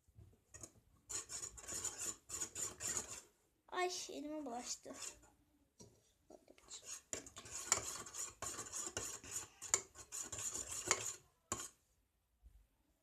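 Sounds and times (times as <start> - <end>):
spoon stirring slime in bowl: 0.5 - 3.3, 4.6 - 11.8.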